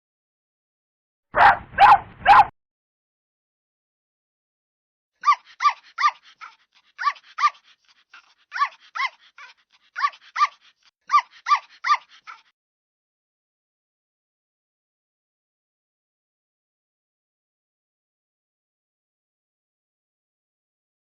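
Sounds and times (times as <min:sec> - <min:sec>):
puppy yipping: 0:01.4 - 0:02.5, 0:05.2 - 0:12.5.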